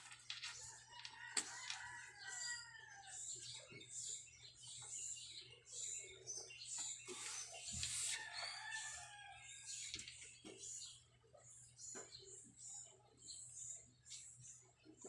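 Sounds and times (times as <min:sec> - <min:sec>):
rooster crowing: 0:01.0 - 0:03.2, 0:08.2 - 0:09.5
soft scratchy strokes: 0:07.1 - 0:08.6.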